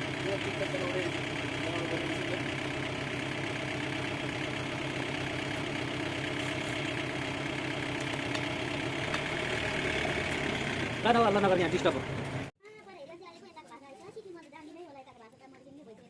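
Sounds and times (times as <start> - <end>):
chainsaw idling: 0.0 - 12.5.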